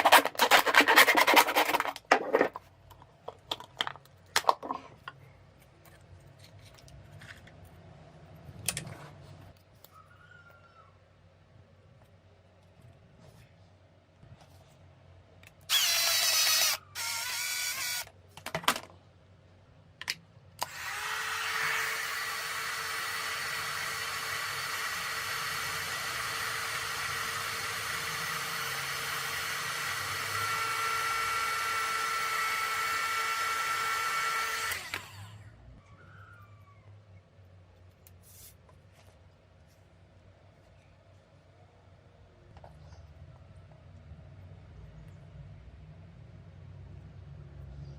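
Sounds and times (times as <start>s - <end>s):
electric power tool running: 15.7s - 18.1s, 20.6s - 35.4s.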